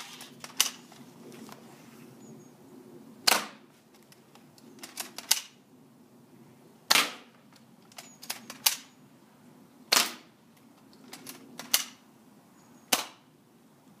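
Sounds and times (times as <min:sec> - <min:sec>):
airsoft rifle shots: 0:03.2 - 0:03.6, 0:06.9 - 0:07.3, 0:09.9 - 0:10.3, 0:12.9 - 0:13.2.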